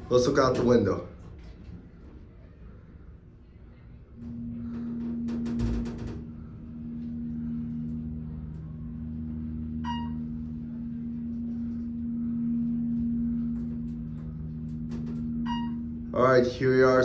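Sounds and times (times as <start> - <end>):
elevator drive humming: 0.0 - 17.0
elevator bell chime: 4.2 - 17.0.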